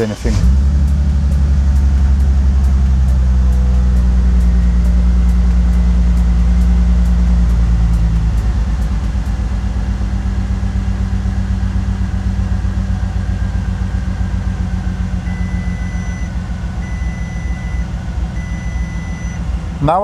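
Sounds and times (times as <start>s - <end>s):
misfiring car engine idling: 0.0s - 20.0s
long electronic beeps: 15.2s - 19.4s.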